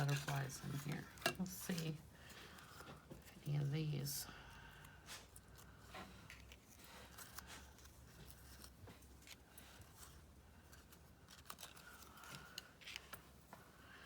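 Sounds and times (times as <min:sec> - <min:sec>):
paper rustling and clicks: 0:10.7 - 0:13.4.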